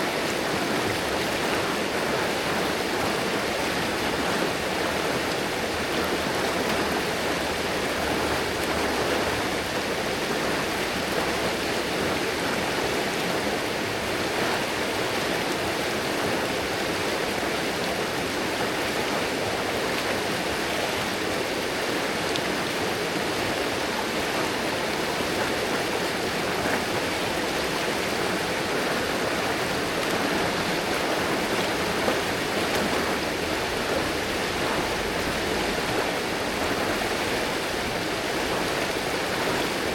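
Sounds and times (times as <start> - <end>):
river water rushing over rocks: 0.0 - 39.9.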